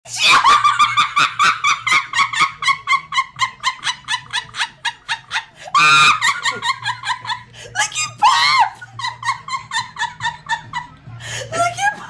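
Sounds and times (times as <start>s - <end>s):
girl laughing hysterically: 0.1s - 11.7s.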